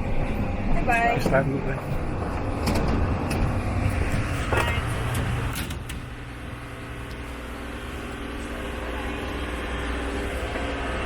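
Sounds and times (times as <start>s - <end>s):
low mechanical rumble with hum: 0.0s - 11.0s
sharp clicks and knocks: 2.3s - 6.1s.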